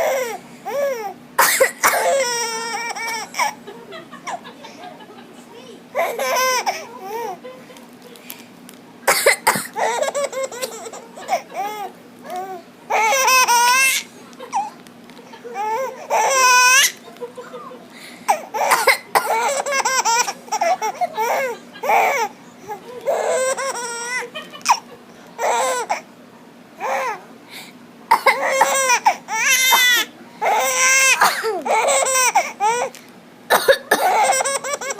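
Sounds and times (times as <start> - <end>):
adult coughing: 1.4 - 2.2, 9.1 - 9.8, 18.3 - 19.6, 28.1 - 28.8, 31.2 - 31.7, 33.5 - 34.4
baby laughing and squealing: 2.0 - 3.6, 6.0 - 7.4, 9.8 - 14.7, 15.6 - 17.0, 18.4 - 26.0, 28.4 - 32.9, 34.1 - 34.9.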